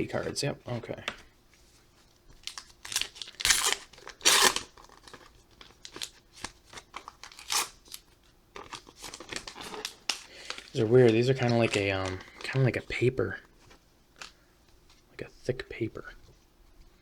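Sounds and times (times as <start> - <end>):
card pack wrapper tearing: 2.4 - 8.0, 8.6 - 12.6.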